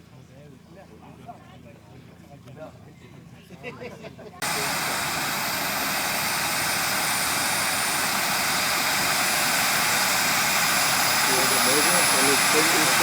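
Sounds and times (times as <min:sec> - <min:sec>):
model helicopter turbine whine: 0:04.4 - 0:13.0.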